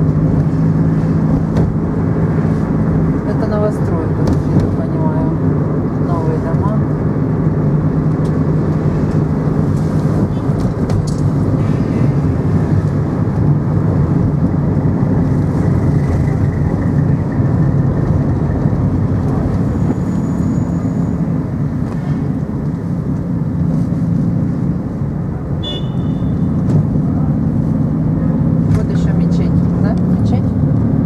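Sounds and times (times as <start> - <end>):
vehicle engine and road noise: 0.0 - 31.0
low hum: 10.6 - 24.9.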